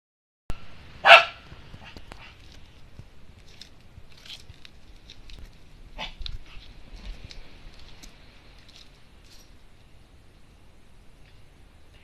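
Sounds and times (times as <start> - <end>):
dog barking sharply: 1.0 - 2.3.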